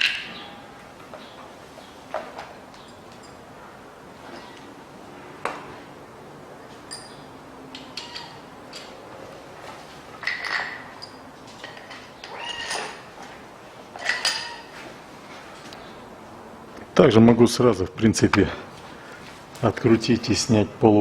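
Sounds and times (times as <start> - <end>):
metal tools clinking: 2.7 - 3.4, 4.2 - 4.7, 6.8 - 9.0, 10.1 - 15.8.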